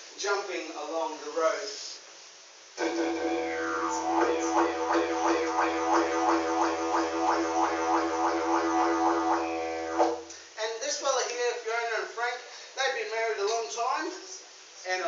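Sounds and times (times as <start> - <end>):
didgeridoo pulsing drone: 2.8 - 10.2.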